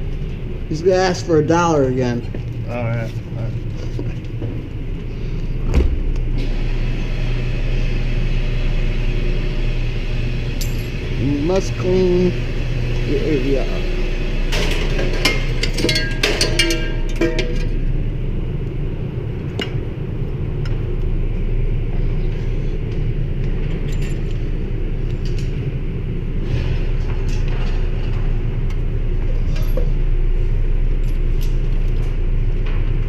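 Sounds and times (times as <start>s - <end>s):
low background rumble: 15.2s - 33.0s.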